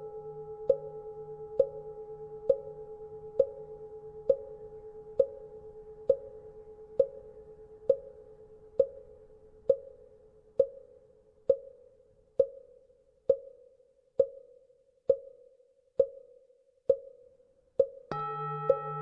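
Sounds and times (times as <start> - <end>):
temple bell hum: 18.1 - 19.0.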